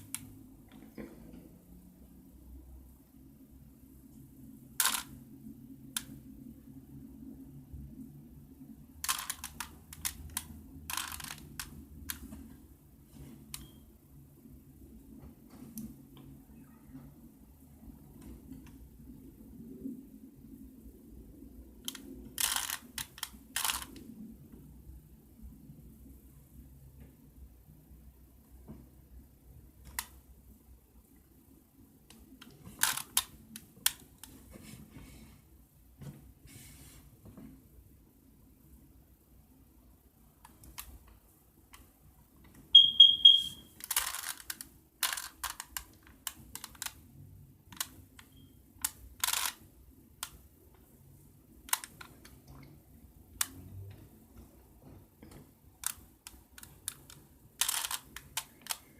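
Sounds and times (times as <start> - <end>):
puzzle cube plastic clicks: 4.8 - 5.2, 9.0 - 12.4, 21.8 - 24.1, 32.2 - 34.4, 42.8 - 47.0, 47.7 - 49.6, 51.6 - 52.3, 55.8 - 58.9.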